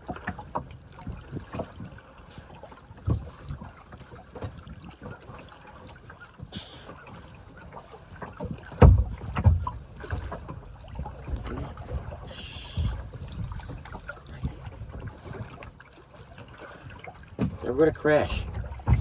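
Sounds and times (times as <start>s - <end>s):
water splashing from paddling: 0.0s - 19.0s
dull knocks on boat: 3.0s - 3.4s, 8.3s - 15.6s, 17.2s - 19.0s.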